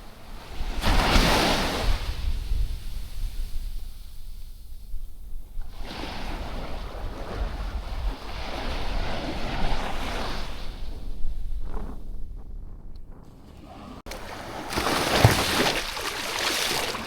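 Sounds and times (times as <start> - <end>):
wind rumble on microphone: 0.0 - 14.5
wave washing up beach: 13.5 - 17.0.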